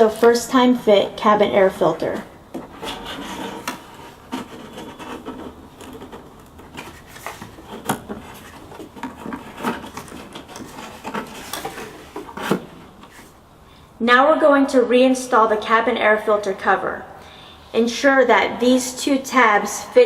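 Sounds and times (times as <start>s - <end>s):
filter rubbing and scraping plastic: 2.6s - 13.4s.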